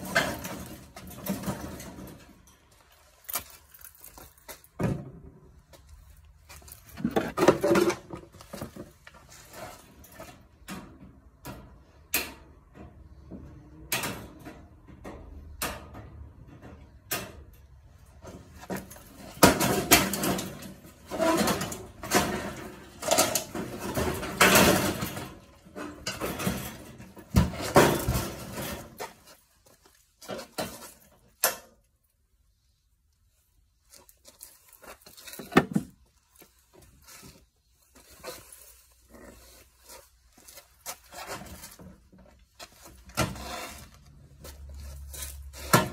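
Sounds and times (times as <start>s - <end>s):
metal parts and tools clanking: 0.0s - 5.1s, 13.9s - 31.9s.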